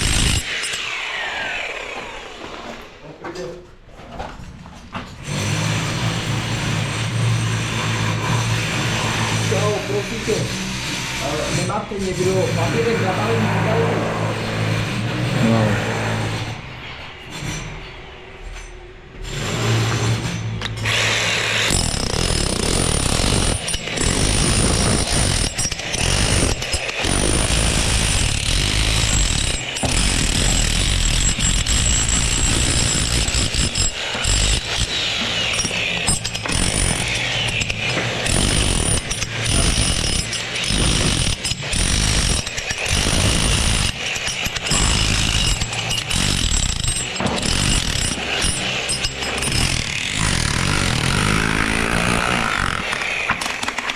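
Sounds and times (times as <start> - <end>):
loud power tool running: 0.0 - 2.9, 20.7 - 53.8.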